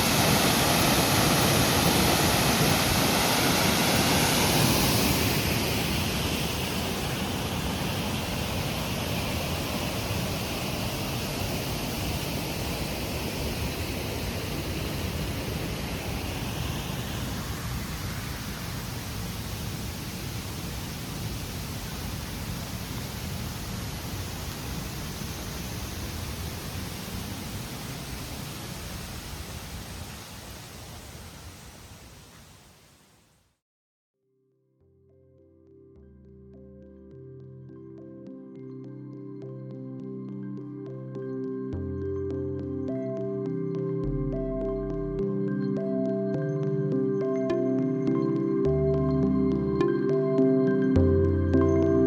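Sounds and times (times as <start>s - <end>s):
waterfall rushing: 0.0s - 32.4s.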